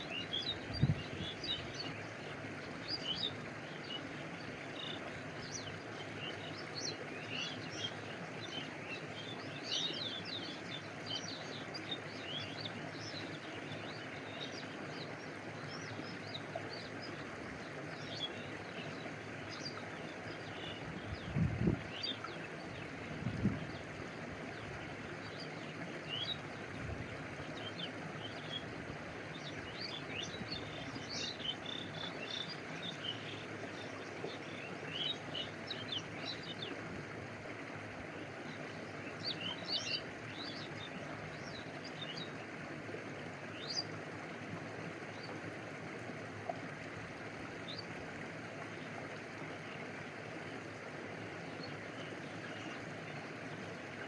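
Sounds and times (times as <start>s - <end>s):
stream water flowing: 0.0s - 54.0s
small birds chirping: 29.3s - 36.8s.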